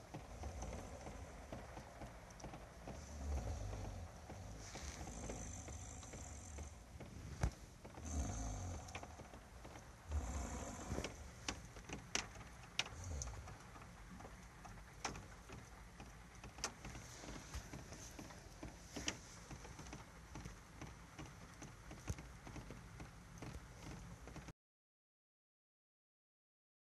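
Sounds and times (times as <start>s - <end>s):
man snoring loudly: 3.0s - 6.8s, 8.0s - 9.2s, 10.1s - 11.2s, 13.0s - 13.4s.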